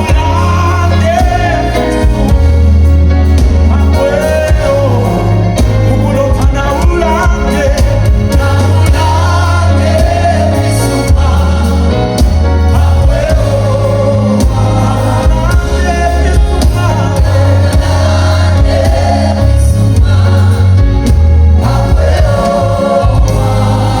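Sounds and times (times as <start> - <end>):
heavy bass line: 0.0 - 24.0
choir singing: 7.1 - 24.0.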